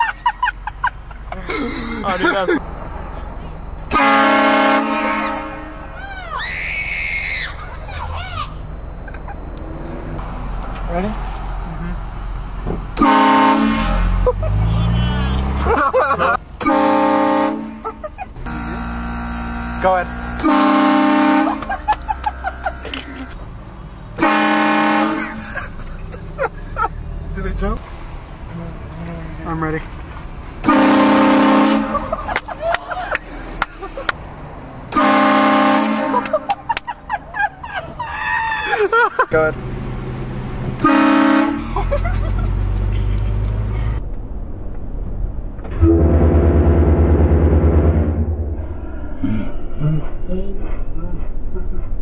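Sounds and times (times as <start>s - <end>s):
truck engine rumbling: 0.0s - 52.0s
air horn blast: 3.9s - 5.9s, 13.0s - 15.6s, 16.6s - 21.8s, 24.2s - 25.4s, 30.6s - 32.2s, 34.9s - 36.5s, 40.8s - 41.7s, 45.8s - 48.7s.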